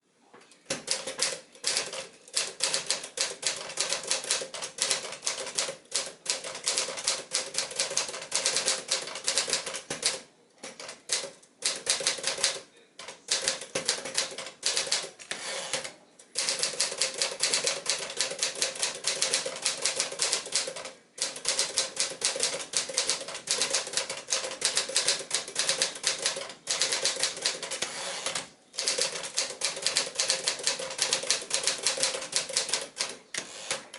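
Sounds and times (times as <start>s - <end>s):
typewriter keystroke clacks: 0.7s - 33.9s.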